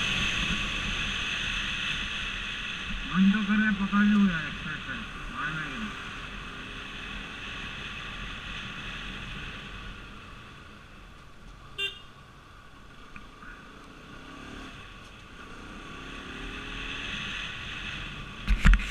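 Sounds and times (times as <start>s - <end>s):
car road and engine noise: 0.0s - 18.9s.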